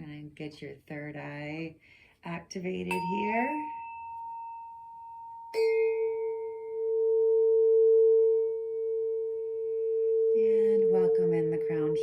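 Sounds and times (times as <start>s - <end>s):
fainter higher ringing tone: 2.9s - 12.0s
struck singing bowl ringing: 2.9s - 12.0s.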